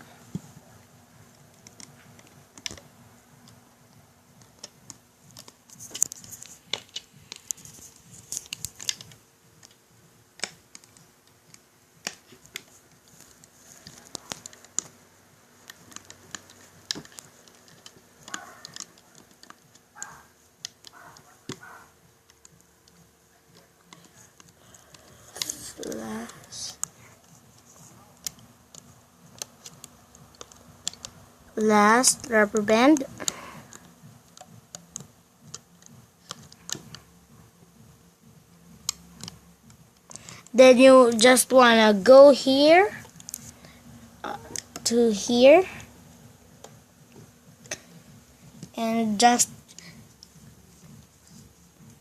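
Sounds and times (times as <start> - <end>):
light clicks and taps of loom: 10.4 - 15.0, 15.6 - 37.1, 38.7 - 40.5.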